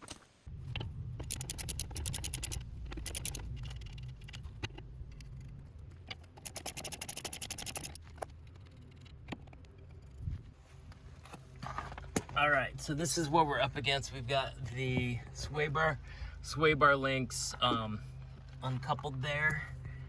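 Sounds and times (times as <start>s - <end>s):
rapid clicking and scraping: 0.0s - 10.4s
steady low hum: 0.4s - 20.0s.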